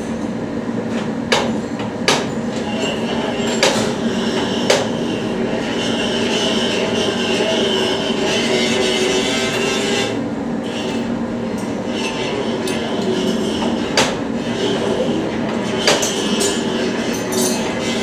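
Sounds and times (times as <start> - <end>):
workshop machinery rumbling: 0.0 - 18.0.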